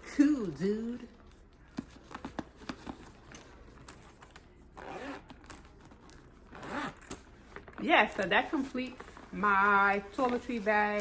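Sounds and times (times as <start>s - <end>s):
zipper and hook knocking: 4.8s - 5.6s, 6.5s - 7.2s.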